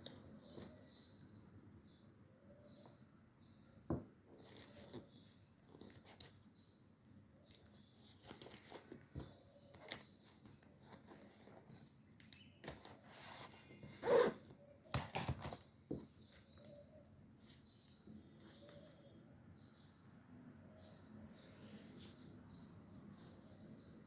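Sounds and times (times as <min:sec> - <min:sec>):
paper rustling and crinkling: 0:07.5 - 0:11.8.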